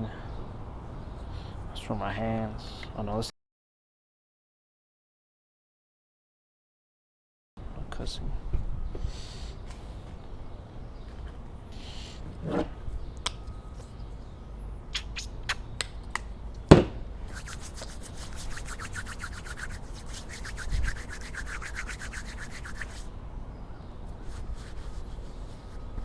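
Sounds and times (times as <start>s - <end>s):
loud knock: 16.7s - 17.0s
rapid scrubbing strokes: 17.3s - 23.1s.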